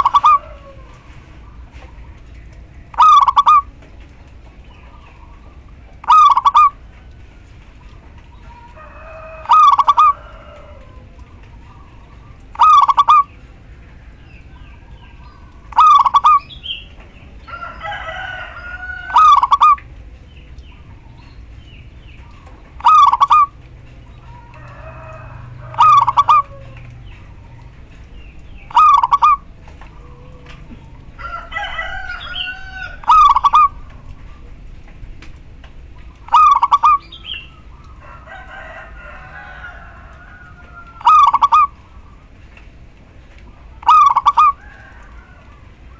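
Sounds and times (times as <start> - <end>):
dove calling: 0.0 - 45.9
faint birds: 0.0 - 45.9.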